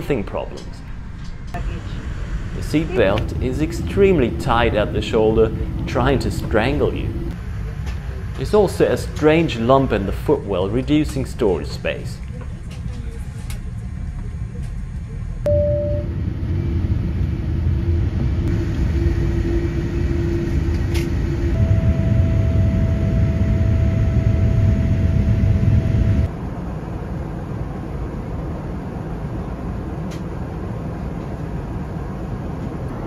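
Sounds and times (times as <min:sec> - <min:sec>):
airliner cabin rumble: 0:00.0 - 0:33.0
steady tone: 0:01.6 - 0:07.4, 0:21.2 - 0:26.3.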